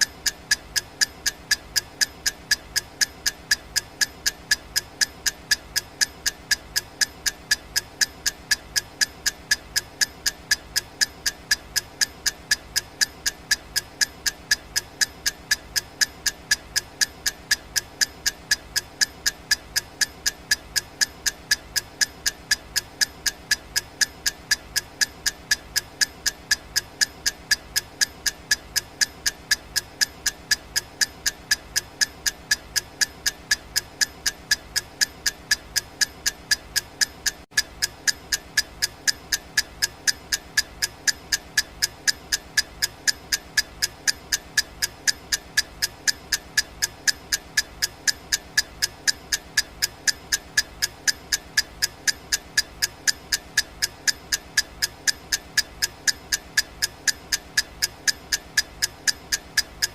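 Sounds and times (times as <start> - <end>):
clock ticking: 0.0 - 59.9.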